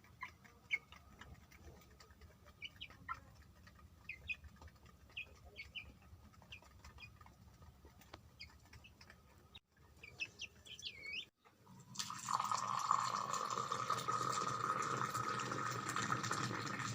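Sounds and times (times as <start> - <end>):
baby chicks peeping: 0.0 - 11.4
water running: 11.7 - 16.9.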